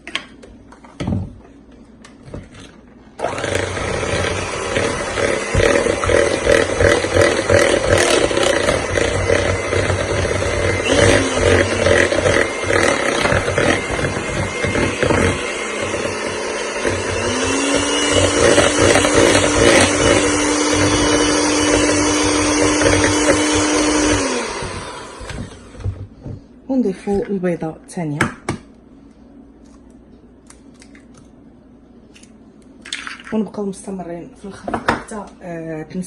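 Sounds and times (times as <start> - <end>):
electric mixer running: 3.2 - 26.4.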